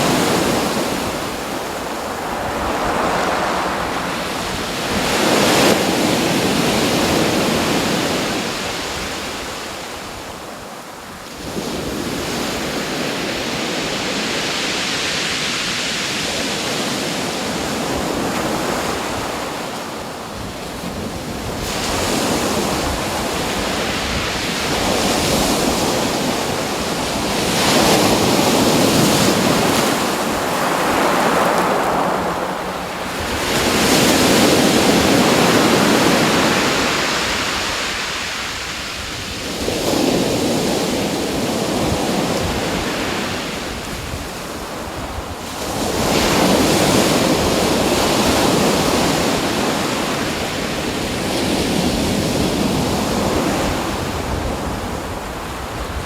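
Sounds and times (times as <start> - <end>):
ocean waves breaking: 0.0 - 9.6, 11.8 - 56.0
wind buffeting microphone: 20.3 - 38.0.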